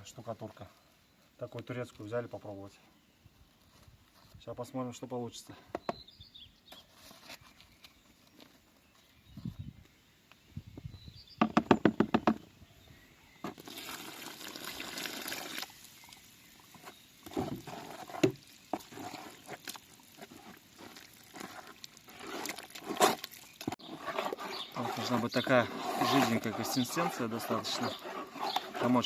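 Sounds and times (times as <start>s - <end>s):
water pouring: 13.6s - 29.0s
stirring plaster knocks and scrapes: 16.7s - 29.0s.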